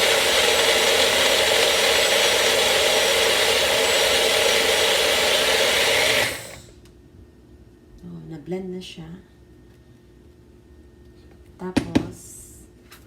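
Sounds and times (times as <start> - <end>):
electric blender running: 0.0 - 6.7.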